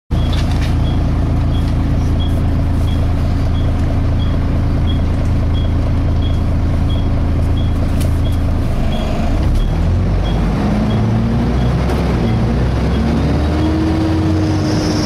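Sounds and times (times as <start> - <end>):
bus engine and fan droning: 0.1 - 15.0
high-pitched screech: 13.6 - 15.0.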